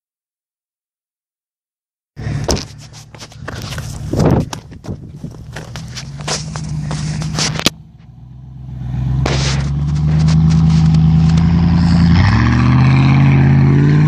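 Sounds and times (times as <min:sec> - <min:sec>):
crunching footsteps: 0:02.2 - 0:08.2, 0:09.1 - 0:12.5
vehicle engine revving: 0:02.2 - 0:14.0.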